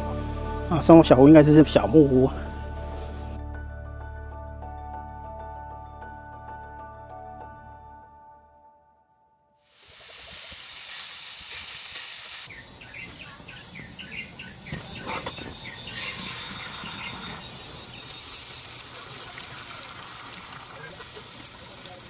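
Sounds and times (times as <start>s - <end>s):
cicadas buzzing and chirping: 9.9s - 20.5s.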